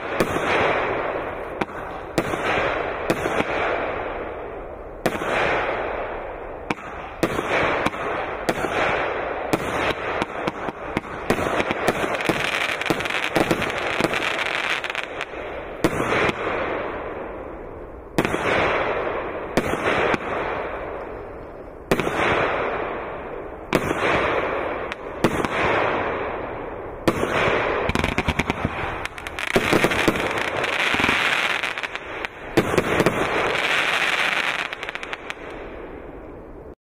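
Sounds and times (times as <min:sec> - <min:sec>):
fireworks bangs: 0:00.0 - 0:36.5
fireworks crackling fizz: 0:09.6 - 0:16.5, 0:27.2 - 0:35.7.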